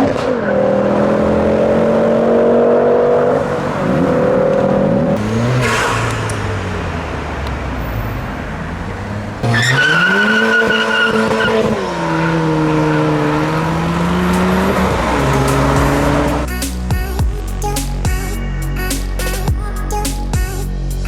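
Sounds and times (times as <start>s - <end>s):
car engine revving: 0.0s - 16.6s
tyres squealing: 0.4s - 16.5s.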